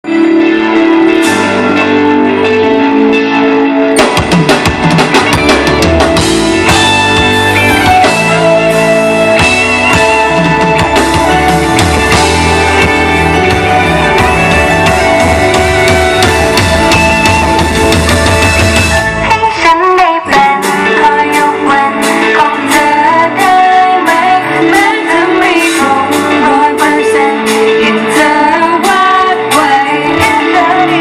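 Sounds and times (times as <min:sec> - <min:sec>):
held keyboard chord: 0:00.0 - 0:19.5
guitar: 0:00.0 - 0:31.0
pop-rock music: 0:00.0 - 0:31.0
drums: 0:00.1 - 0:31.0.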